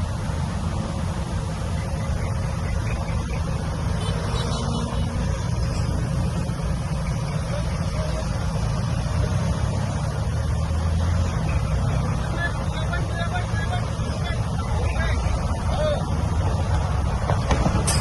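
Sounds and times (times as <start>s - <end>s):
diesel engine rumbling: 0.0s - 18.0s.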